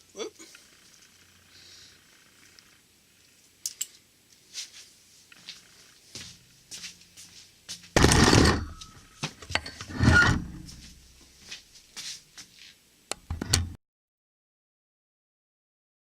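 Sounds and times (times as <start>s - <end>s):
metal parts clattering: 8.0s - 8.9s
metal parts rubbing and scraping: 8.0s - 8.9s, 9.6s - 10.9s.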